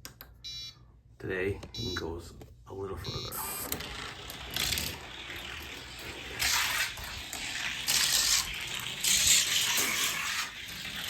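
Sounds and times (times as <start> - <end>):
toy car wheels whirring on track: 3.8 - 11.0.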